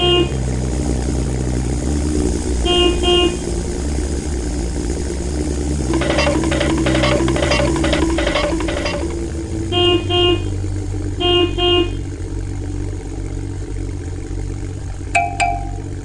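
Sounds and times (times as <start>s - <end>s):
vehicle horn beeping: 0.0s - 0.4s, 2.6s - 3.4s, 9.7s - 10.6s, 11.2s - 12.1s
low engine rumble: 0.0s - 16.0s
clicks: 5.9s - 9.2s
short higher beep: 15.2s - 15.9s.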